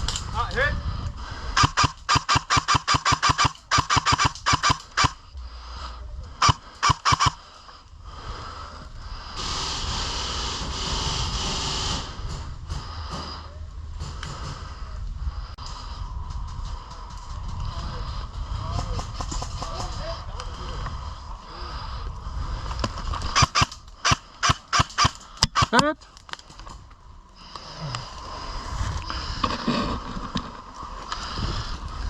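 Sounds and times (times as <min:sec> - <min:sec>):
airsoft gun firing bursts: 0:01.6 - 0:05.2, 0:06.4 - 0:07.4, 0:23.4 - 0:25.9.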